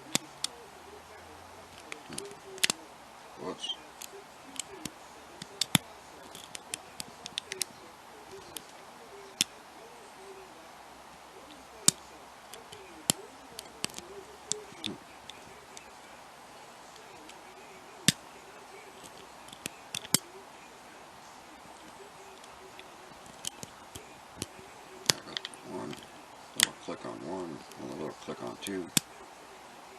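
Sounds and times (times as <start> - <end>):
faint bird cooing: 0.0 - 28.9
lock pick clicking: 1.8 - 2.8, 4.0 - 7.6, 19.0 - 20.2.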